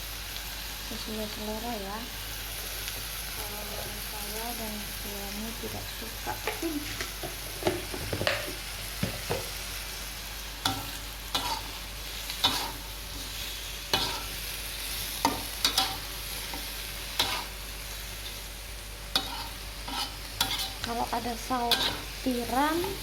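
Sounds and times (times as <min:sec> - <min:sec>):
food sizzling in oil: 0:00.0 - 0:23.0
spatula scraping a wok: 0:10.6 - 0:23.0.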